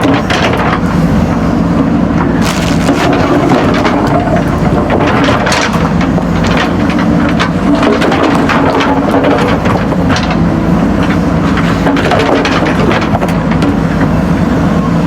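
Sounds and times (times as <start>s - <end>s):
diesel engine running: 0.0s - 15.0s
knocks and crunches in soil: 2.2s - 8.4s.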